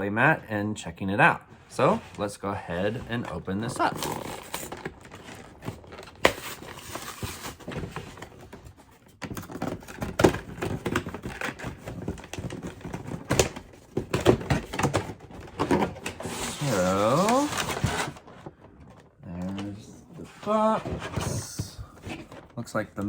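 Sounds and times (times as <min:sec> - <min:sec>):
plastic crinkling: 0:14.8 - 0:20.8.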